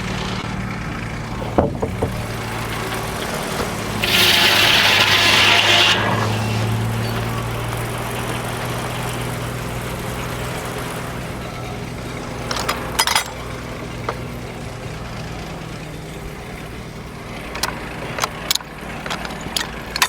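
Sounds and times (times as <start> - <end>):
sawmill engine humming: 0.0 - 20.0
sharp metal clanks: 12.4 - 13.6.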